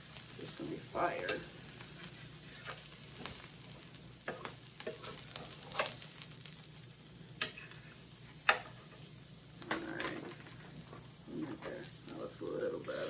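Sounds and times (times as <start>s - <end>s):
food sizzling in hot oil: 0.0s - 13.0s
utensil scraping a pan: 1.2s - 3.4s, 4.3s - 6.1s.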